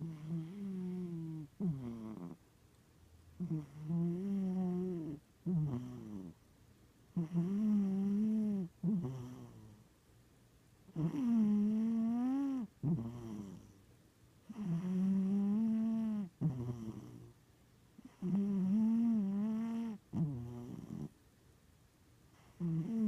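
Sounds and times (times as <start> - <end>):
cat snoring: 0.0 - 2.4, 3.4 - 6.4, 7.1 - 9.8, 10.9 - 13.8, 14.4 - 17.3, 18.0 - 21.2, 22.4 - 23.0.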